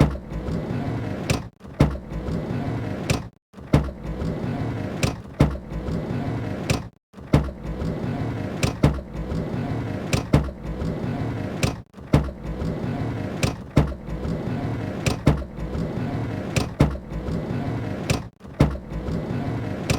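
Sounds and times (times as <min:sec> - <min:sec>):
van sliding door rumbling: 0:00.0 - 0:19.9.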